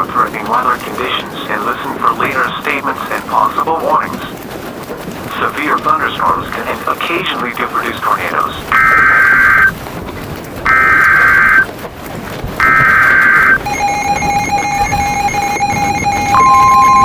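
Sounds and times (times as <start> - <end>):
digital data tone bursts: 8.7 - 9.7, 10.7 - 11.6, 12.6 - 17.0
pulsing electronic alert beeps: 8.7 - 9.7, 10.7 - 11.6, 12.6 - 17.0
steady alert tone: 10.7 - 11.6, 12.6 - 17.0.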